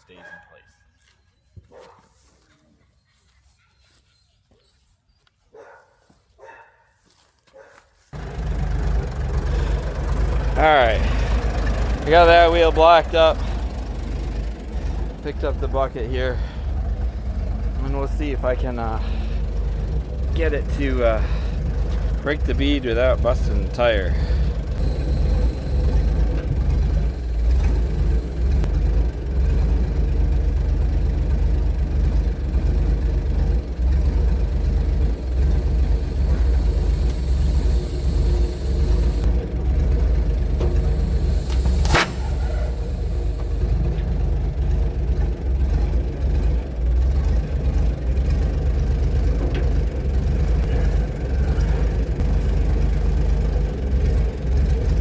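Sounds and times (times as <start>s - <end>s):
tractor engine idling: 8.1s - 55.0s
sharp crack: 40.6s - 43.5s.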